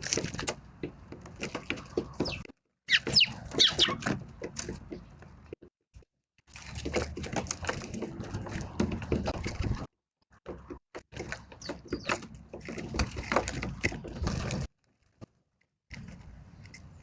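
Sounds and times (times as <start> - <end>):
short high bird chirps: 2.2 - 4.0.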